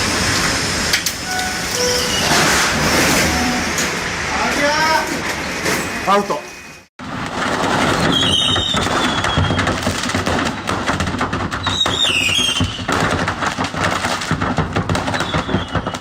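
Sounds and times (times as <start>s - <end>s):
high sliding squeal: 1.2s - 4.1s
crackling knocks and rattles: 7.0s - 16.0s.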